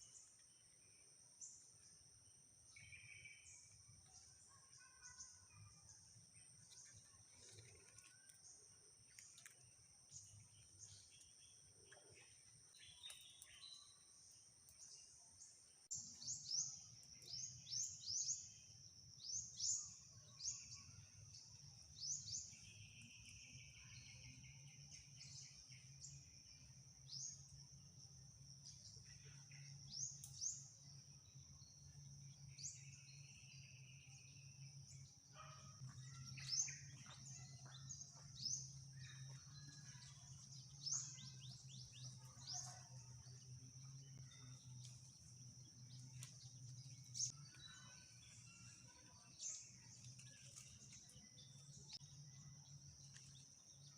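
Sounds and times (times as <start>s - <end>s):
birds chirping: 31.7s - 53.9s.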